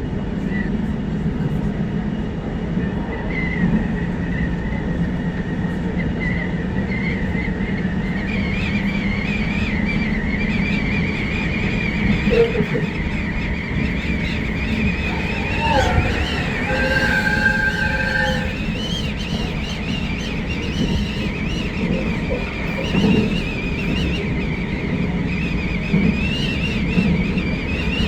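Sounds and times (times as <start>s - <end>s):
train wheels rumbling on track: 0.0s - 28.0s
high wavering whine: 14.1s - 18.9s.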